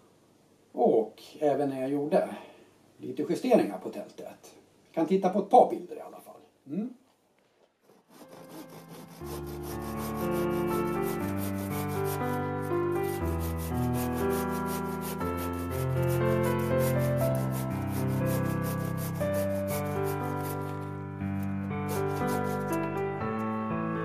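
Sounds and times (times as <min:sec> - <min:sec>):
music with held chords: 0:09.7 - 0:24.0.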